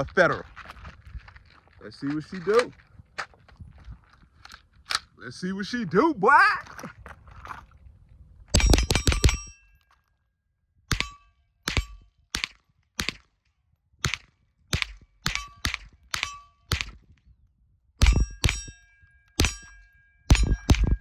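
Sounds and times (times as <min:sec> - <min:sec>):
suppressed rifle shots: 0:08.6 - 0:09.6, 0:10.9 - 0:13.2, 0:14.0 - 0:17.0, 0:18.0 - 0:18.7, 0:19.4 - 0:21.0
short metallic ring: 0:08.6 - 0:09.8, 0:18.0 - 0:21.0.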